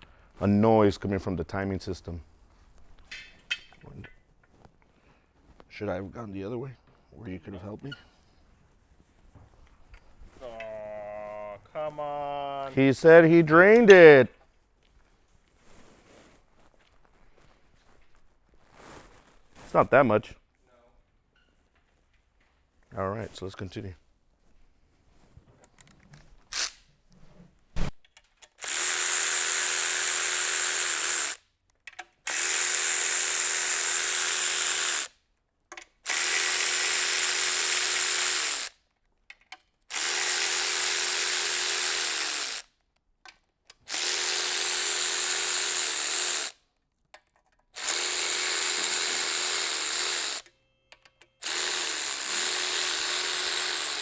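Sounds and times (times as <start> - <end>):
power tool running a bolt: 26.5 - 26.8, 28.5 - 31.4, 32.3 - 35.1, 36.0 - 38.8, 39.9 - 42.7, 43.8 - 46.6, 47.8 - 54.0.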